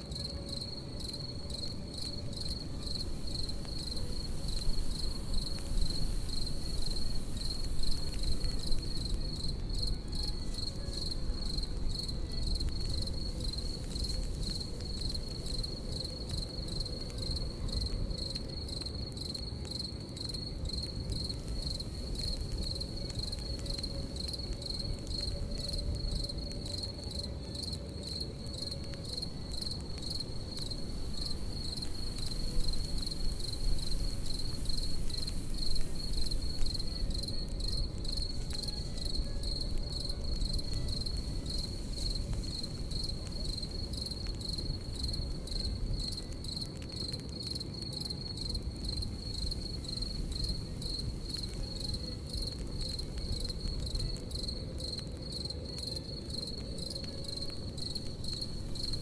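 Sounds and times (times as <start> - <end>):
campfire crackling and popping: 0.0 - 59.0
crickets chirping: 0.0 - 59.0.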